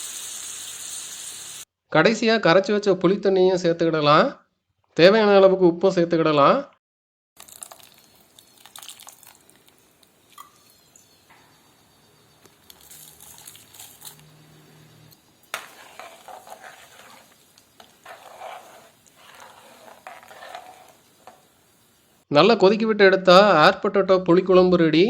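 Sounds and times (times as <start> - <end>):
spoon clinking and scraping pan: 15.2 - 21.6.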